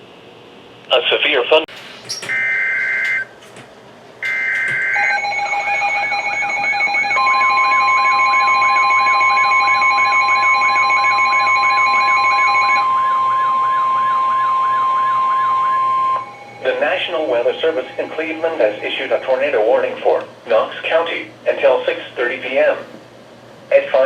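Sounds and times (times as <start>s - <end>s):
steady warning tone: 1.7s - 20.9s
harsh data burst buzz: 2.0s - 3.3s, 4.2s - 19.7s
warbling alarm: 2.1s - 3.3s, 4.2s - 20.1s.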